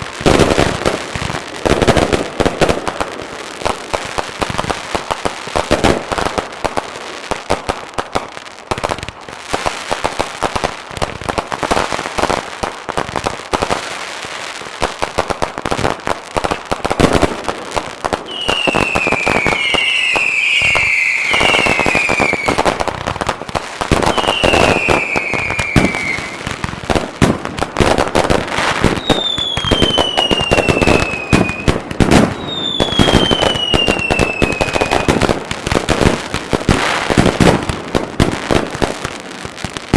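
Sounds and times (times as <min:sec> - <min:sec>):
fireworks bangs and cracks: 0:00.0 - 0:39.9
falling fireworks whistles: 0:18.1 - 0:39.9.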